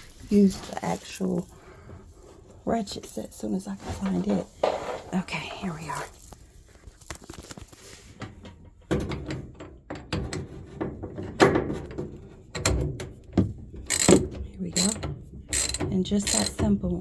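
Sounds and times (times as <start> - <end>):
metal tools clicking and knocking: 13.8 - 16.8.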